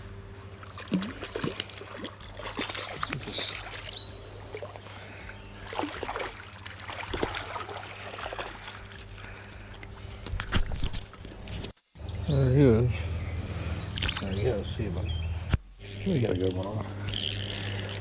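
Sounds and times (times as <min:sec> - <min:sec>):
creek water splashing and trickling: 0:00.0 - 0:11.8, 0:13.5 - 0:14.9.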